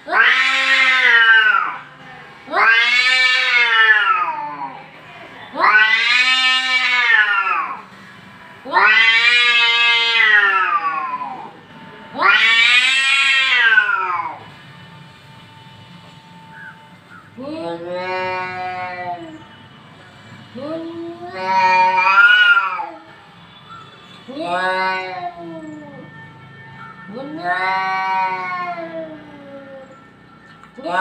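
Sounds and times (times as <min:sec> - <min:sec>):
cat yowling: 0:00.1 - 0:01.8, 0:02.5 - 0:04.8, 0:05.6 - 0:07.8, 0:08.7 - 0:11.5, 0:12.2 - 0:14.4, 0:17.8 - 0:19.4, 0:20.9 - 0:23.0, 0:24.3 - 0:26.1, 0:27.2 - 0:29.9.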